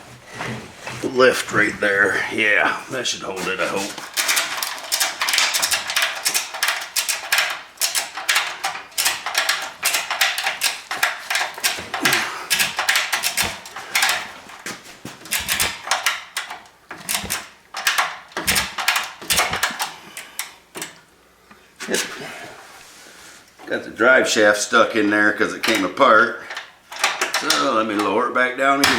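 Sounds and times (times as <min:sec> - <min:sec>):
metal clanks: 0:03.4 - 0:21.0
ratchet strap clicking: 0:04.0 - 0:21.0
dull thumps: 0:09.1 - 0:17.7, 0:18.3 - 0:19.8.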